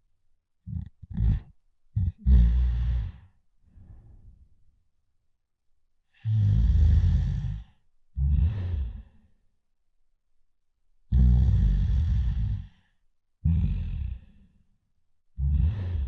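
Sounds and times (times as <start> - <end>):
person snoring: 0.7 - 3.3, 6.2 - 9.3, 11.1 - 12.8, 13.4 - 14.5, 15.4 - 16.0.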